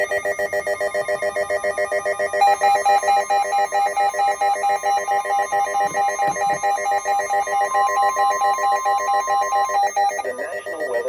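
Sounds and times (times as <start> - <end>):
electronic beeping tones: 0.0 - 11.0
higher repeating beep: 4.5 - 11.0.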